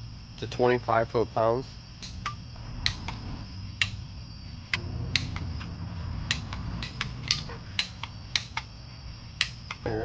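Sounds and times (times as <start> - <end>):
low steady hum: 0.0 - 10.0
wrench clicking on bolts: 6.3 - 8.7.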